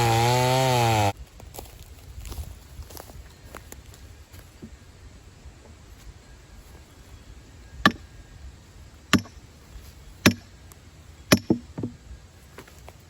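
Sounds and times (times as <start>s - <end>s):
axe chopping wood: 9.1s - 9.4s, 10.2s - 10.5s, 11.3s - 11.9s.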